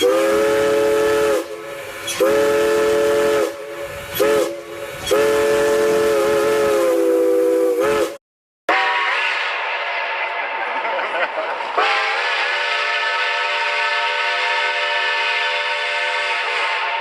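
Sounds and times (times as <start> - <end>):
hiss: 0.0 - 8.2
multi-chime train horn: 8.7 - 10.8, 11.7 - 17.0.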